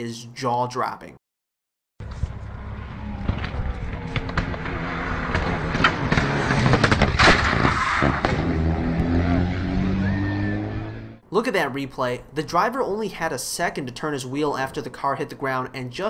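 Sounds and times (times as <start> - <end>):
rally car engine running hard: 2.0 - 11.1.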